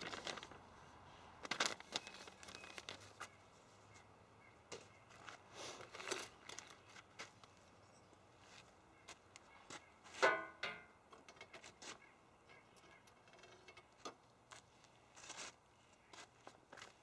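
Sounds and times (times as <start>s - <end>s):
light clicks and rustles: 4.7s - 17.0s.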